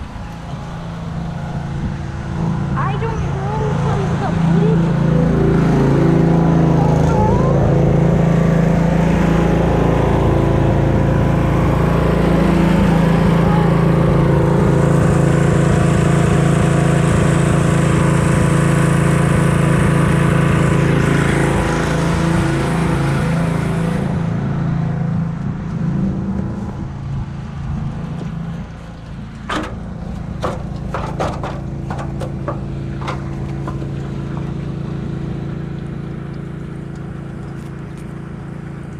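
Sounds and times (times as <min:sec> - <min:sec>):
pressure washer engine running: 0:00.0 - 0:38.9
sharp clicks and knocks: 0:29.0 - 0:34.6.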